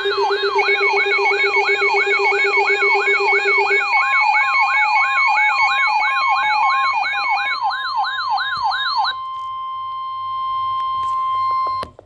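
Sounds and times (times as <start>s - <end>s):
electronic siren rising sweeps: 0.0s - 11.8s
steady beeping tones: 0.0s - 11.8s
steady high alarm tone: 0.0s - 11.9s.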